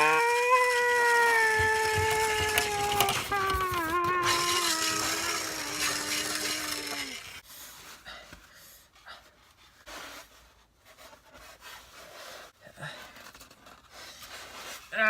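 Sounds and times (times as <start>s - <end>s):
man's long drawn-out cry: 0.0s - 7.3s.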